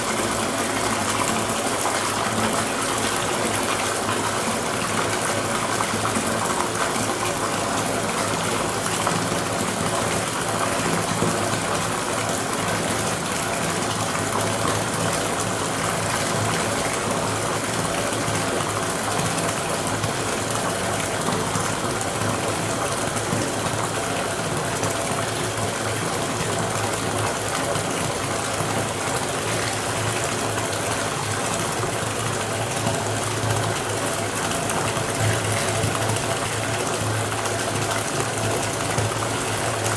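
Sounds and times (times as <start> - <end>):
tap water filling bathtub: 0.0 - 39.9.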